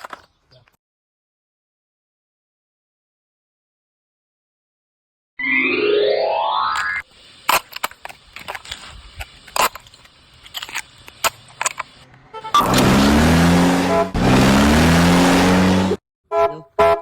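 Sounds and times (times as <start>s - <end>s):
short honking beeps: 12.3s - 12.8s, 16.3s - 17.0s
car engine revving sound effect: 12.4s - 16.0s.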